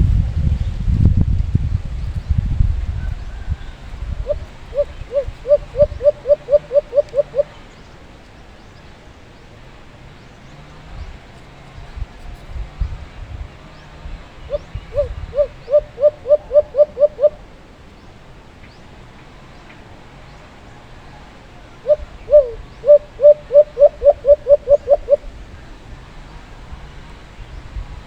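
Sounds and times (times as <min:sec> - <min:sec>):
dove cooing: 0:04.0 - 0:07.6, 0:14.5 - 0:17.5, 0:21.8 - 0:25.4.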